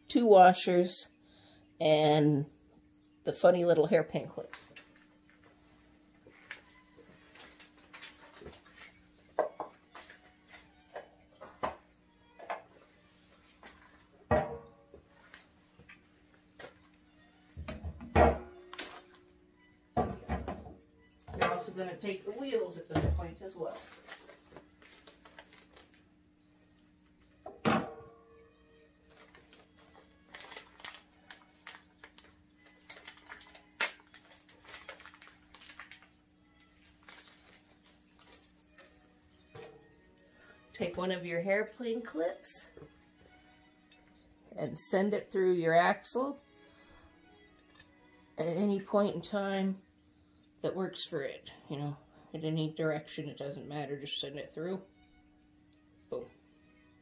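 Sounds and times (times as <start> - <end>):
faint steady hum: 0.0 - 57.0.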